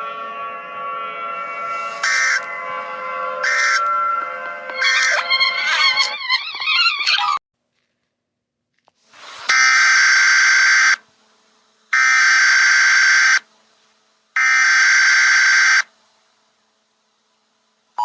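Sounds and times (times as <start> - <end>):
harsh buzzing data bursts: 2.0 - 2.5, 3.4 - 3.8.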